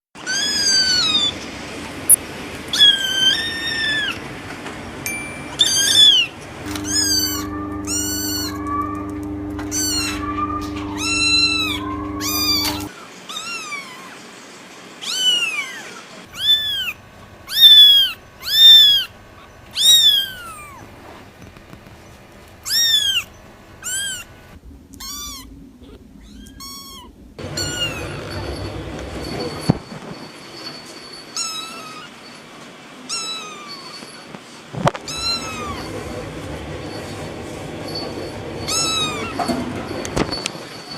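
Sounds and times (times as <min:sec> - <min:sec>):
kittens meowing: 0:00.2 - 0:01.4, 0:02.7 - 0:04.2, 0:05.6 - 0:14.2, 0:15.0 - 0:19.1, 0:19.7 - 0:20.9, 0:22.6 - 0:24.3, 0:24.9 - 0:28.4, 0:31.3 - 0:32.2, 0:33.1 - 0:34.2, 0:35.0 - 0:36.0, 0:38.7 - 0:39.6
steady low hum: 0:04.9 - 0:12.9, 0:16.3 - 0:31.1.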